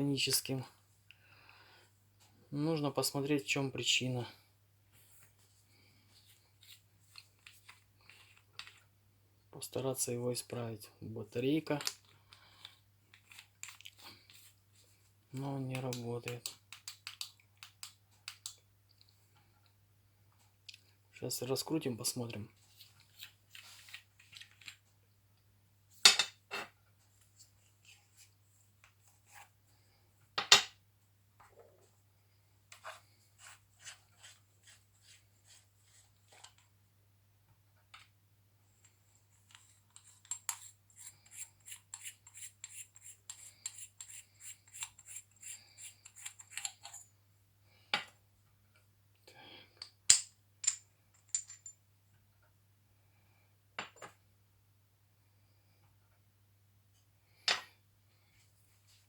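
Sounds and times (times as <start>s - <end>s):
metal parts clinking and knocking: 50.1s - 51.8s.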